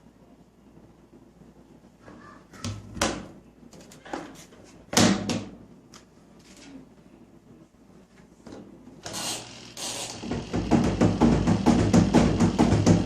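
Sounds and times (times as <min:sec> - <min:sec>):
washing machine banging: 0:10.0 - 0:13.0.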